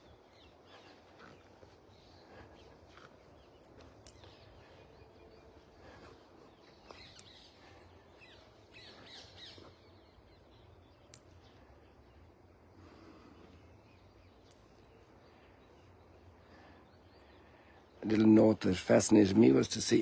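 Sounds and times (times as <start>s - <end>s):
birds chirping: 0.0s - 20.0s
faint clicks: 2.9s - 4.4s, 11.0s - 11.6s, 14.4s - 14.9s.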